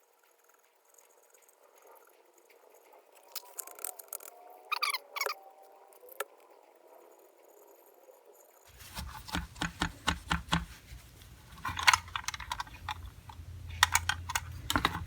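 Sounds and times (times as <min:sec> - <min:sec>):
scratchy rubbing: 0:08.7 - 0:15.0.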